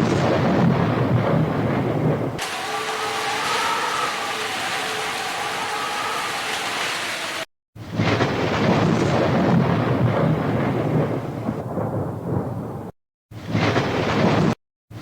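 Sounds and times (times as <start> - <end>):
rolling thunder rumble: 0.0 - 14.6
steady rain: 2.4 - 7.5.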